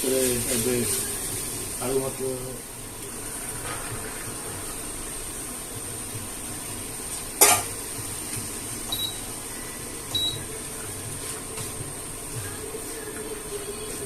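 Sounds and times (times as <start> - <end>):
metal utensil clanking on pot: 7.4 - 7.7.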